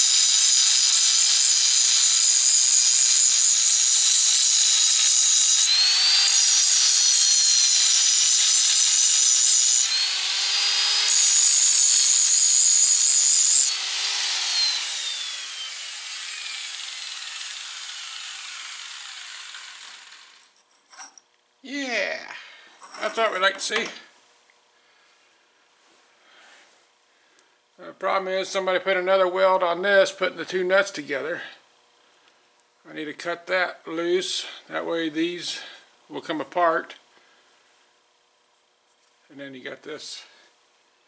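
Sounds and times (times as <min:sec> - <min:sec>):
angle grinder grinding metal: 0:00.0 - 0:21.2.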